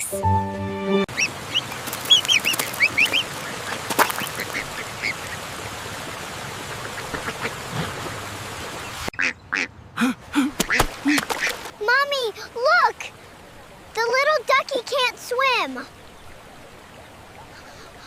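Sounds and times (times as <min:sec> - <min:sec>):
ducklings peeping: 0:01.1 - 0:05.4.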